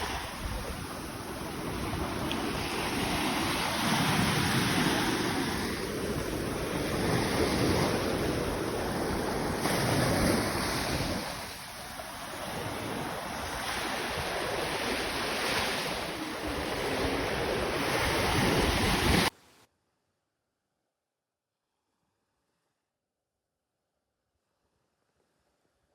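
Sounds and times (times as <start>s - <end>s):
sea surf washing on shore: 0.0s - 19.3s
wind buffeting microphone: 0.0s - 19.3s.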